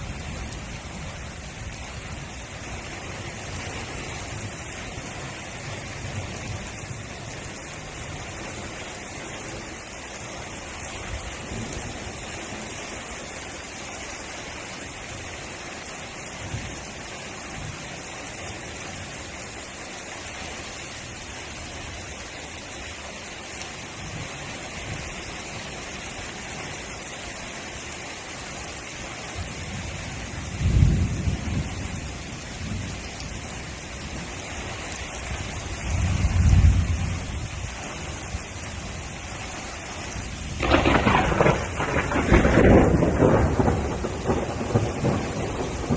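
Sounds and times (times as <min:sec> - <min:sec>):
steady rain: 0:00.0 - 0:45.9
thunder rumbling: 0:40.5 - 0:45.9.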